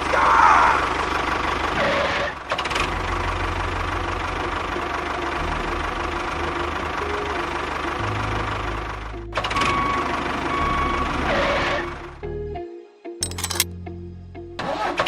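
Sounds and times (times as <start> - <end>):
engine running with knocking rhythm: 0.8 - 11.2.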